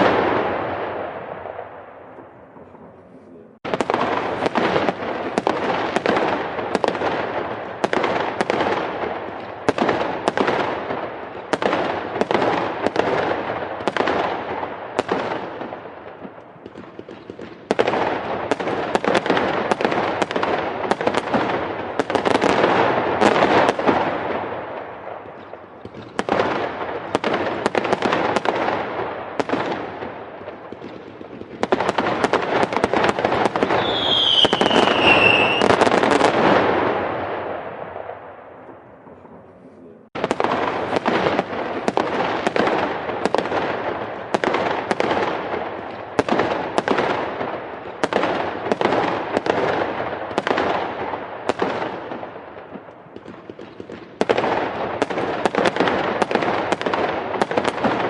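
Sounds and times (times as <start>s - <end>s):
fireworks bangs and crackles: 0.0s - 58.0s
falling firework whistle: 33.6s - 36.2s.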